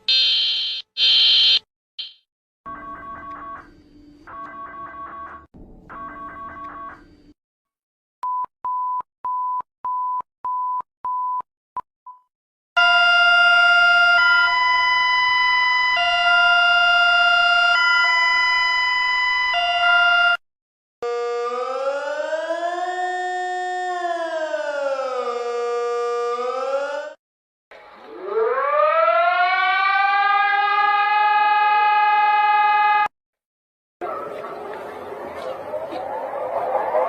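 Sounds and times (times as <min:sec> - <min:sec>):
short alarm beeps: 0:00.1 - 0:02.2
siren gliding up in pitch: 0:12.8 - 0:20.4, 0:21.0 - 0:27.2, 0:28.0 - 0:33.1.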